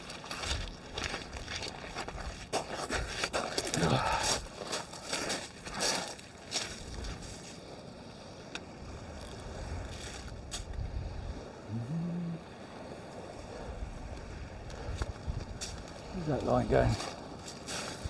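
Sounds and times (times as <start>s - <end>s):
wind rumbling on microphone: 8.8s - 17.0s
short low hum: 11.7s - 12.5s.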